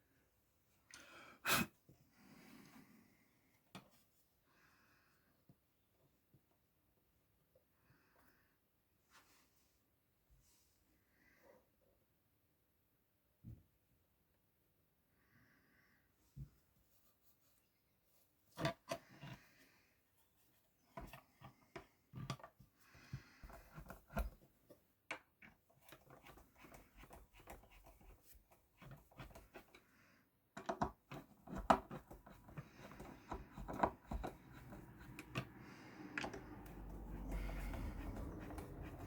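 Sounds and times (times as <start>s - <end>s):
clicks and taps of small tools: 30.6s - 39.0s.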